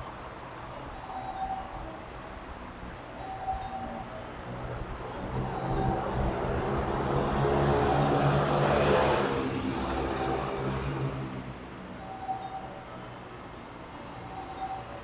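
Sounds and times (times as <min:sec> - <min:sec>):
electric train passing: 0:04.3 - 0:15.0.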